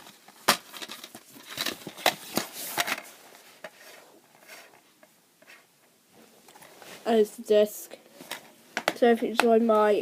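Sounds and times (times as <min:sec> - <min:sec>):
rustling: 0:00.0 - 0:07.3.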